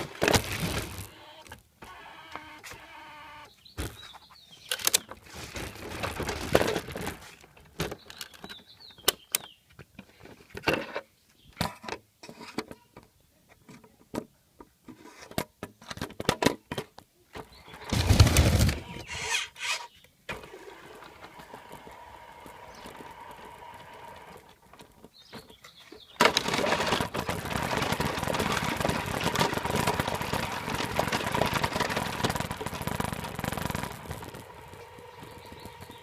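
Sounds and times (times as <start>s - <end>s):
toy car electric motor whirring: 0.0s - 3.5s, 17.7s - 24.6s, 26.2s - 36.0s.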